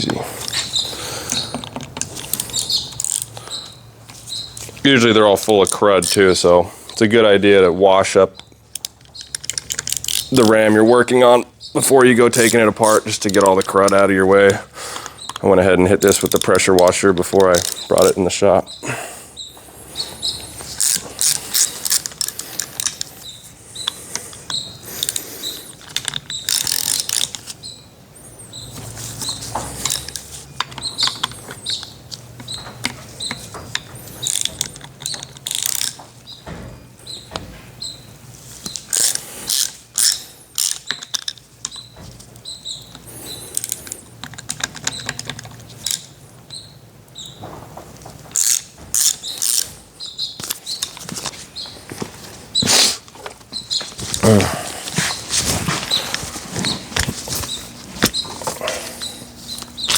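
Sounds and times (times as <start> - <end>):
metallic clicks and scrapes of tools: 0.4 - 7.0, 8.7 - 10.9, 11.8 - 18.2, 20.2 - 27.6, 29.0 - 36.0, 38.6 - 41.9, 42.9 - 46.2, 48.3 - 49.8.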